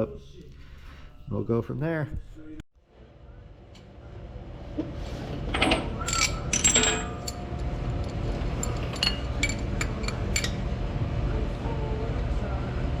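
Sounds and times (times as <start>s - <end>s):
steady low hum: 0.0s - 13.0s
metal parts clinking: 5.5s - 7.4s, 8.6s - 10.6s.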